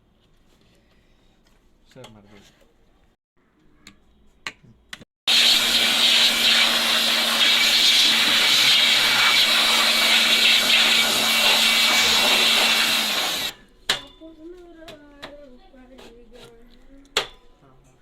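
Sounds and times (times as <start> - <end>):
electric air blower humming: 5.3 - 13.5.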